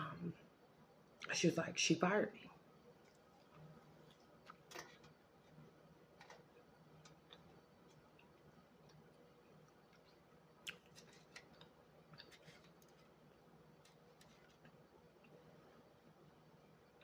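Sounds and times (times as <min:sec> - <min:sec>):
faint eating clicks and crackles: 0:02.4 - 0:16.0.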